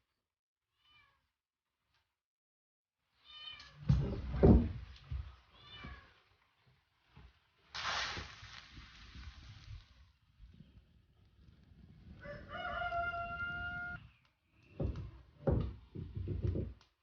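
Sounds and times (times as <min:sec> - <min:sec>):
cat meowing: 0:00.8 - 0:01.2, 0:05.5 - 0:06.2.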